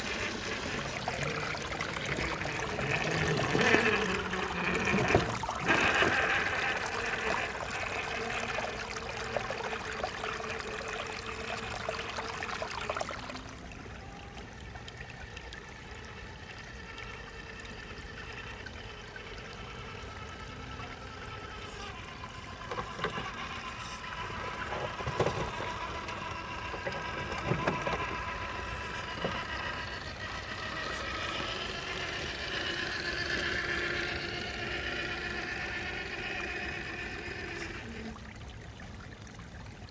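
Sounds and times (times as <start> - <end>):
electric motor whine: 0.0 - 38.3
water trickling: 0.0 - 39.9.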